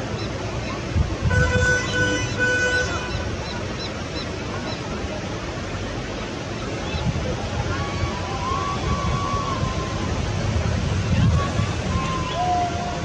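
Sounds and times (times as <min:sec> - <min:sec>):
wind on microphone: 0:00.0 - 0:03.6, 0:06.8 - 0:13.0
river water rushing: 0:00.0 - 0:13.0.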